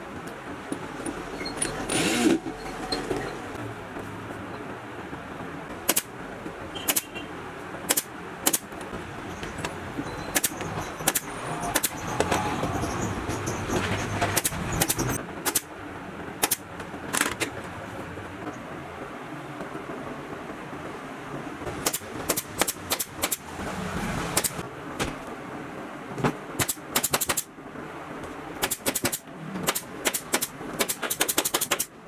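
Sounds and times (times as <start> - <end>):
workshop background noise: 0.0 - 25.4, 26.1 - 27.6, 28.2 - 32.0
staple gun shots: 5.9 - 6.1, 7.9 - 8.7, 26.6 - 27.5, 28.6 - 31.9.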